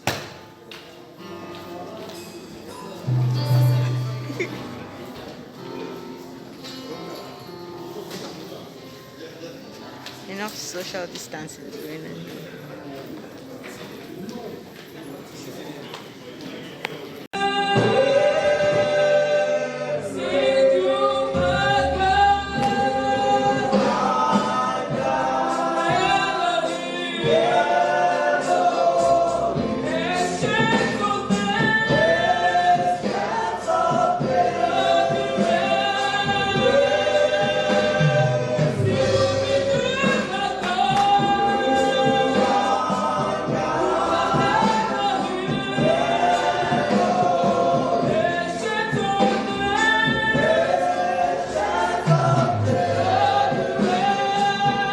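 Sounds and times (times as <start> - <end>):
choir singing in harmony: 2.3 - 7.6, 17.4 - 54.9.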